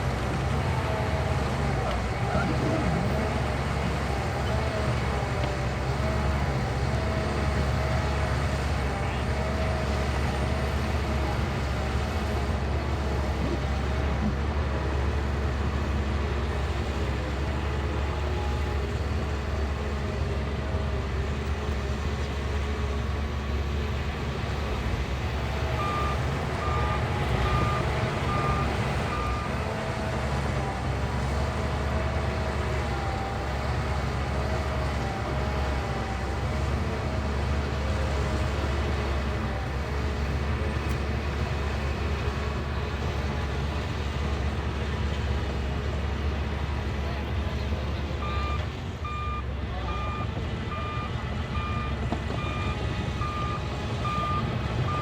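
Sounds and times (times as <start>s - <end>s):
bulldozer diesel engine running: 0.0s - 55.0s
reversing alarm beeps: 25.6s - 29.6s, 48.2s - 55.0s.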